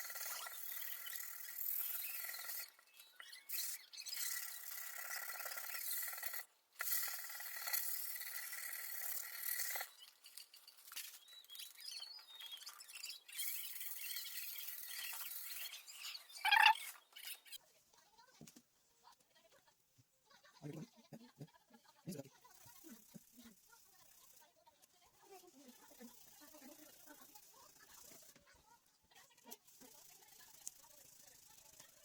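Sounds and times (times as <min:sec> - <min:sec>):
sandpaper scraping resin: 0:00.0 - 0:11.0.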